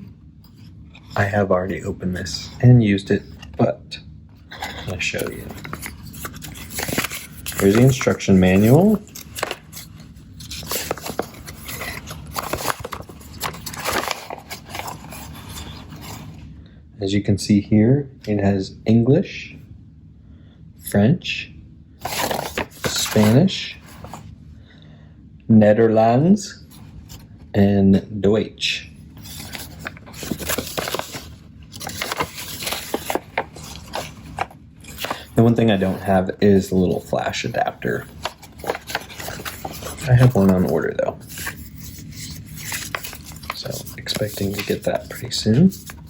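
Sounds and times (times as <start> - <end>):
paper rustling and scraping: 4.6 - 16.4, 22.0 - 24.3, 29.0 - 46.0.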